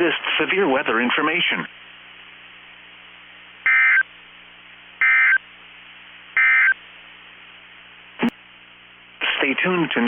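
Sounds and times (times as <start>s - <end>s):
radio hiss and hum: 0.0s - 10.0s
short warbling data tones: 3.7s - 4.0s, 5.0s - 5.4s, 6.4s - 6.8s.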